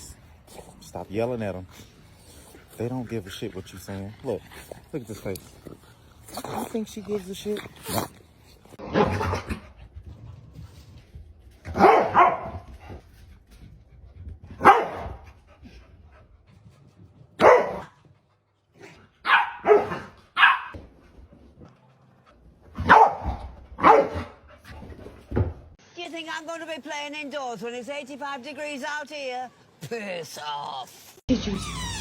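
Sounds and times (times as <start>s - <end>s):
dog barking: 11.7s - 12.7s, 14.6s - 15.2s, 17.4s - 18.0s, 19.2s - 20.8s, 22.8s - 24.4s.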